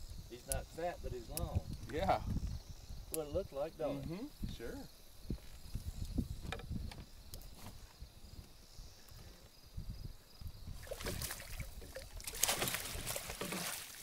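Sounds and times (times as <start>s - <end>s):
water splashing: 10.8s - 14.0s.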